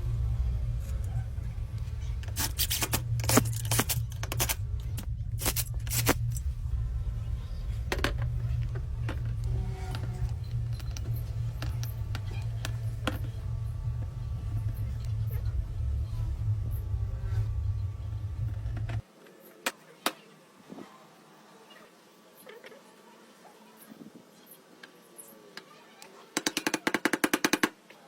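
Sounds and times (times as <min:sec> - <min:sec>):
steady low hum: 0:00.0 - 0:19.6
scrapes and clicks: 0:00.8 - 0:06.5.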